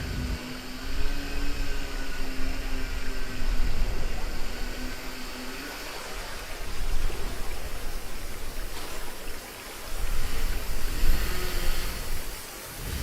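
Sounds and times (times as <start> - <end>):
deep rumble: 0.0 - 2.7
low steady hum: 0.0 - 13.0
rushing water: 0.0 - 13.0.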